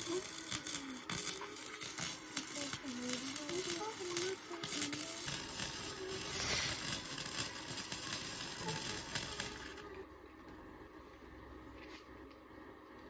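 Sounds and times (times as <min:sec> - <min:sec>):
arc welder crackling hiss: 0:00.0 - 0:09.9.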